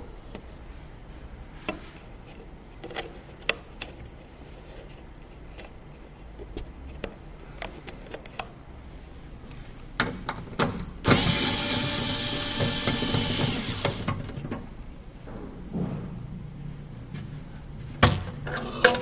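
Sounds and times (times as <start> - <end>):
small electric motor whirring: 11.1 - 14.2.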